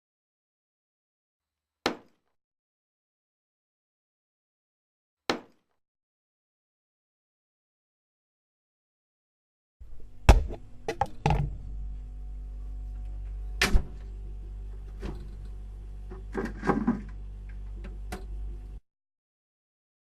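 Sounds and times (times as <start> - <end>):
steady low hum: 9.8 - 18.8.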